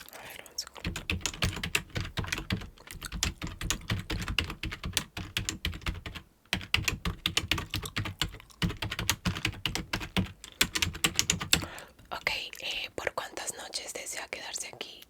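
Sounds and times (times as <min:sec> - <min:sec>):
computer keyboard typing: 0:00.8 - 0:12.4.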